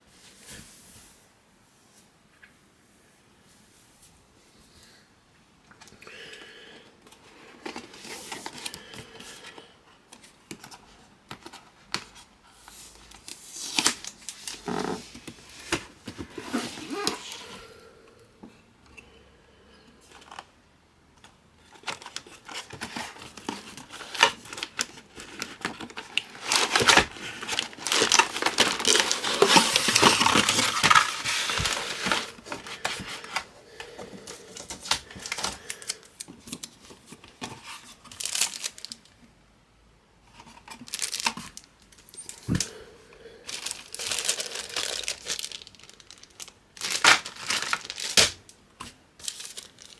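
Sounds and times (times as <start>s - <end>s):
plastic crinkling and tearing: 13.1s - 17.5s, 21.8s - 33.5s, 34.3s - 39.2s, 40.4s - 42.7s, 43.5s - 49.9s
cardboard boxes clicking and knocking: 21.8s - 35.6s, 43.5s - 49.9s.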